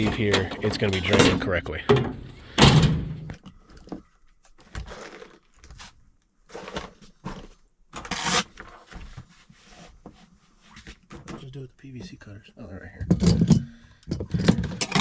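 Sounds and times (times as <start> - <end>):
tools being rummaged through: 0.0 - 3.4.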